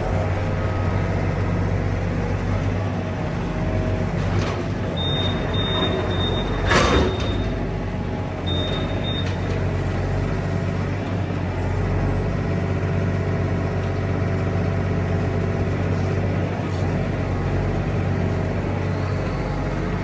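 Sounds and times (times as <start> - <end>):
engine idling: 0.0 - 6.7.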